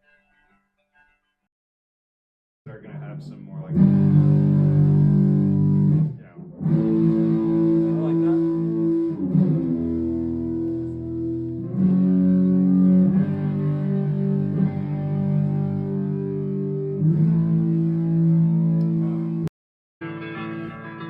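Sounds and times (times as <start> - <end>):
electric guitar ringing chords: 3.7 - 6.0, 6.6 - 19.4, 20.0 - 21.0.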